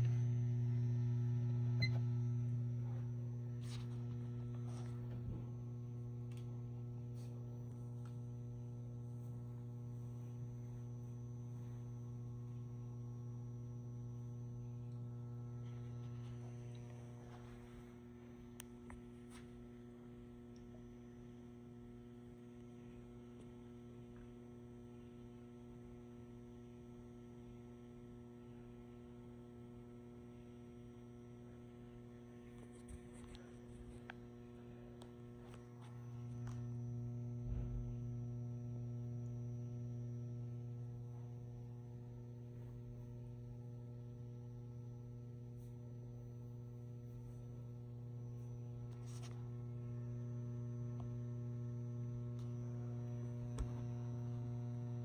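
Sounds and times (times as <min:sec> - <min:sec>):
faint electrical hum: 0:00.0 - 0:55.0.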